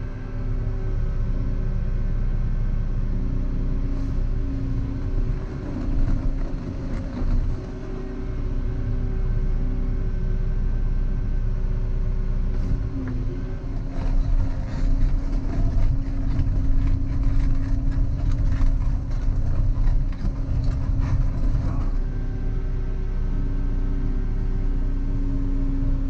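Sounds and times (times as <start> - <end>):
excavator diesel engine running: 0.0 - 26.0
clunks and knocks: 12.6 - 22.0.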